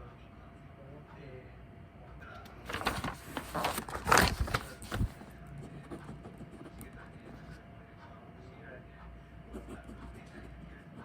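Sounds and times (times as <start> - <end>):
rustling and scraping handling: 2.6 - 5.3.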